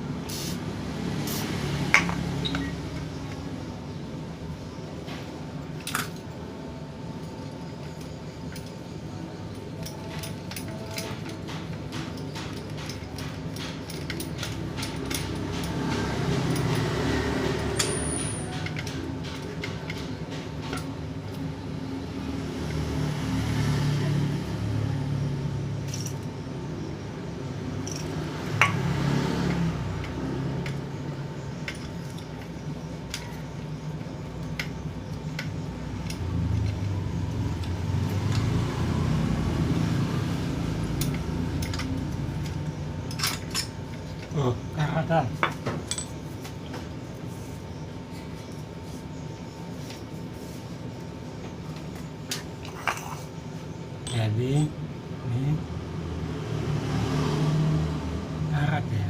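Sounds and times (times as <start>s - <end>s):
metal parts clicking and clinking: 5.7s - 6.4s, 7.2s - 21.5s, 25.8s - 26.4s, 27.8s - 28.8s, 29.5s - 39.1s, 40.8s - 44.7s, 45.4s - 46.3s.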